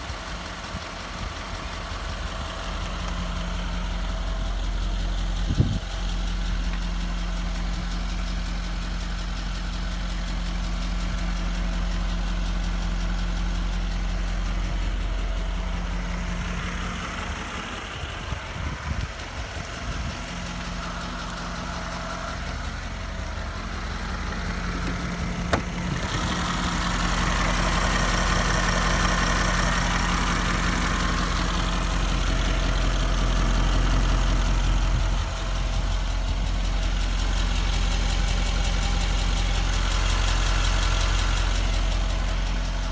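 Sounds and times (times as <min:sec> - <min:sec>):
diesel engine running: 0:00.0 - 0:42.9
loud engine ticking: 0:00.0 - 0:42.9
single thump: 0:24.6 - 0:26.2.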